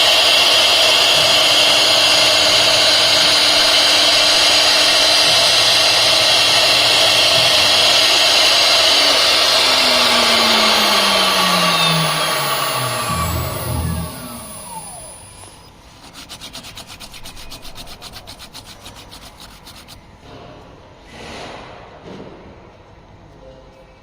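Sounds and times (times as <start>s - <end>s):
router spindle whine: 0.0s - 15.8s.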